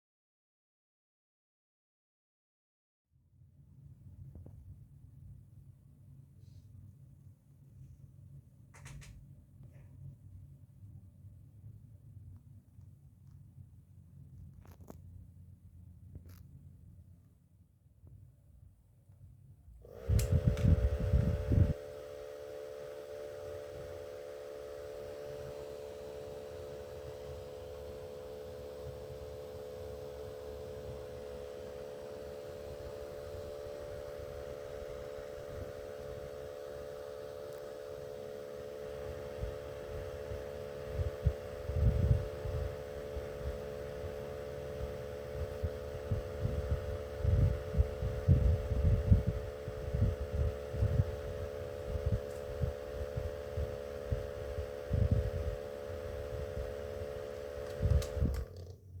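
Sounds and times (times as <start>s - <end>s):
small fan motor humming: 19.7s - 59.0s.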